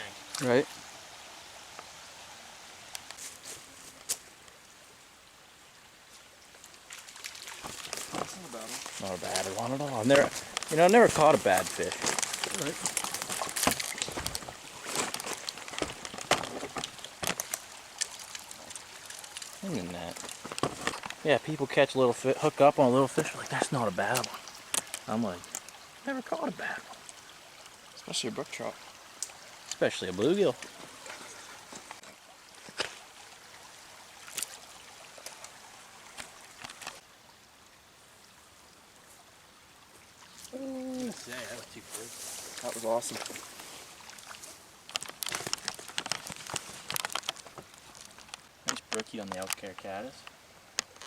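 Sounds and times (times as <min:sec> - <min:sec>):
mountain stream running: 0:00.0 - 0:51.0
rustling and crinkling: 0:03.0 - 0:04.3, 0:06.9 - 0:21.3, 0:36.1 - 0:37.0, 0:40.4 - 0:51.0.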